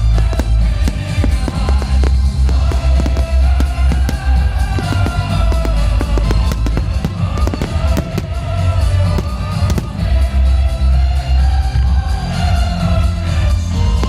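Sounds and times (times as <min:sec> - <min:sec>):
fireworks bursting and crackling: 0:00.0 - 0:10.8
loud music with heavy bass: 0:00.0 - 0:14.0.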